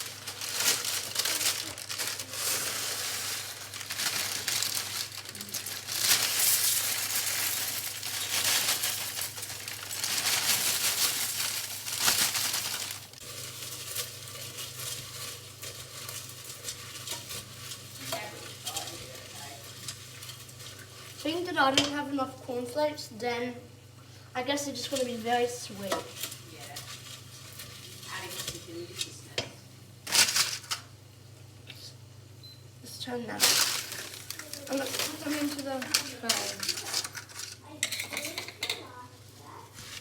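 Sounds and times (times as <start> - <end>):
cornflakes stirred crunchy crackling: 0.0 - 22.8, 24.5 - 31.0, 33.1 - 40.0.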